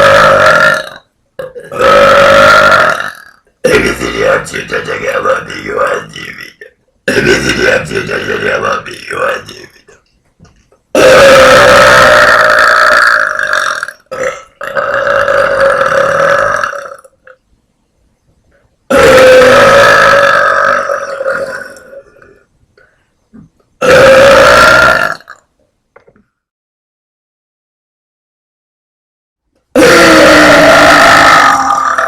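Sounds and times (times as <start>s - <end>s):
woman burping loudly: 0.0s - 4.1s, 11.0s - 17.4s, 18.9s - 22.3s, 23.4s - 25.5s, 29.8s - 32.0s.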